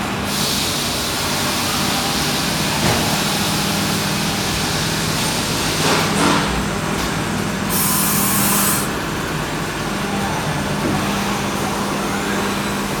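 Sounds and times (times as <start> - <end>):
loud air hiss: 0.2 - 5.7, 7.7 - 8.9.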